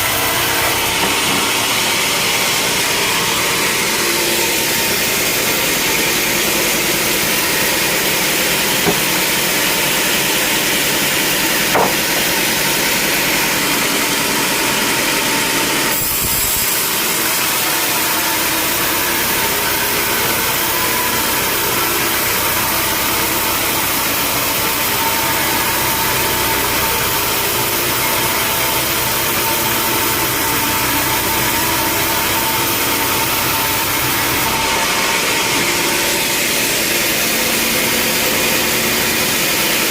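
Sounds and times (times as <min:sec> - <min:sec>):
sawmill machinery running: 0:00.0 - 0:39.9
short knock: 0:08.8 - 0:09.2, 0:11.8 - 0:12.2.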